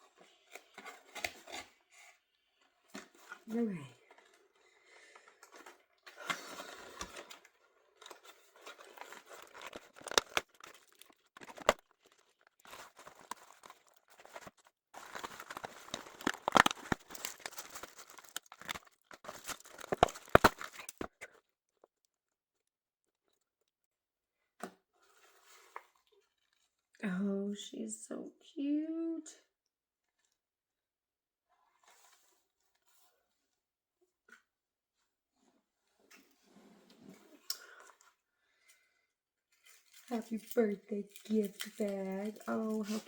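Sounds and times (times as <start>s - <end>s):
plastic and cardboard crinkling: 0.0s - 22.2s, 39.5s - 43.0s
sharp clicks and snaps: 9.4s - 14.0s.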